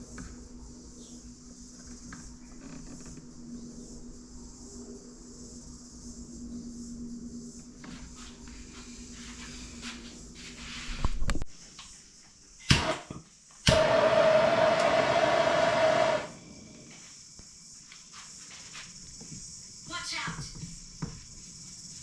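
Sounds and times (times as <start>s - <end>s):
sharp click: 12.7s - 13.1s
heat gun blowing: 12.7s - 16.8s.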